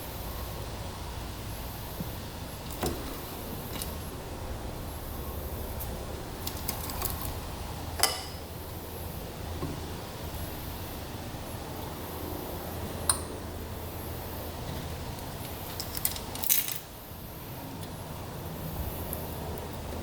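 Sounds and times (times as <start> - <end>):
steady low hum: 0.0 - 20.0
metal parts clicking and tapping: 2.6 - 4.0, 6.4 - 7.4, 15.4 - 16.9.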